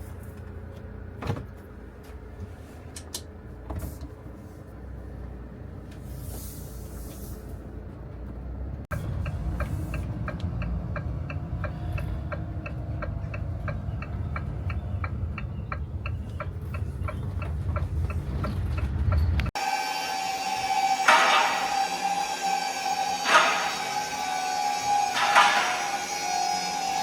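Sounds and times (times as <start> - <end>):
engine rumbling: 0.0 - 27.0
turn signal ticking: 8.9 - 19.6.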